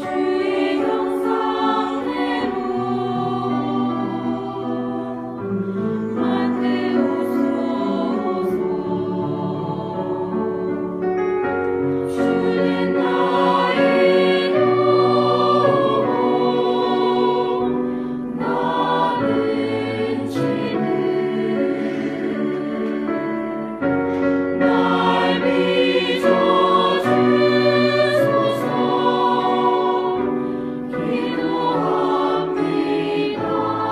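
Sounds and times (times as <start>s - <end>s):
choir singing a hymn: 0.0s - 33.9s.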